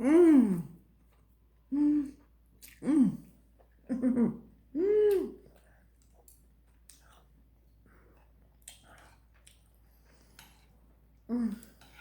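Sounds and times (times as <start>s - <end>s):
person chewing food: 5.1s - 12.0s.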